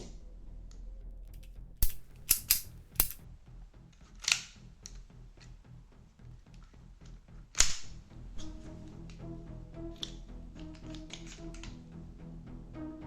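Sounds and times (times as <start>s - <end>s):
air pistol clicks and pops: 1.3s - 3.2s, 4.2s - 5.0s, 7.6s - 8.0s.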